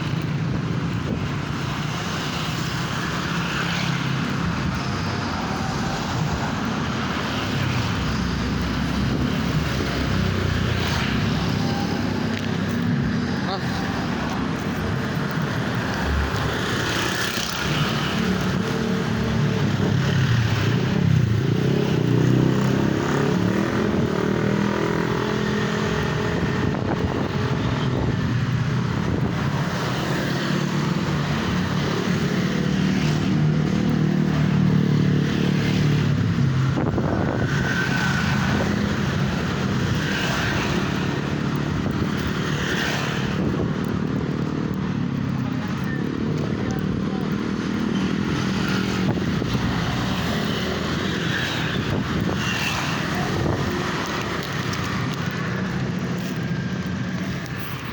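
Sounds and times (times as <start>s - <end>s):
constant noisy rush: 0.0s - 57.9s.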